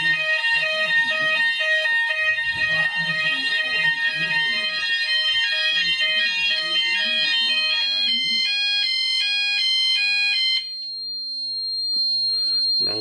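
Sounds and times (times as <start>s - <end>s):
high-pitched electronic tone: 12.4s - 13.0s.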